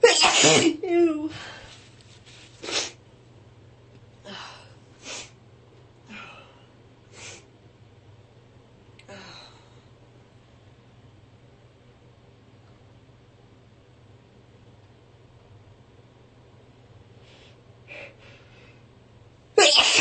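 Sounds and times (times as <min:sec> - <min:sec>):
woman sneezing: 0:00.0 - 0:00.9, 0:19.6 - 0:20.0
woman sniffing: 0:02.6 - 0:03.0.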